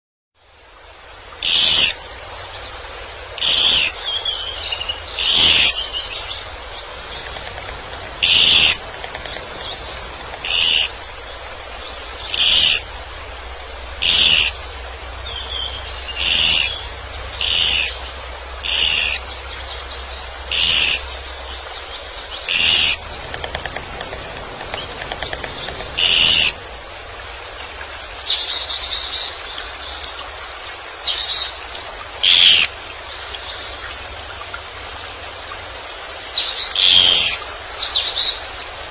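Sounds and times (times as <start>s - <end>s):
woodpecker high call: 1.4s - 2.0s, 3.4s - 4.0s, 5.2s - 5.8s, 7.0s - 11.0s, 12.2s - 12.9s, 14.0s - 14.6s, 16.2s - 16.8s, 17.4s - 18.0s, 18.6s - 19.2s, 20.5s - 21.0s, 22.5s - 26.6s, 32.2s - 32.7s, 36.8s - 37.4s
faint bird chirps: 22.5s - 26.6s.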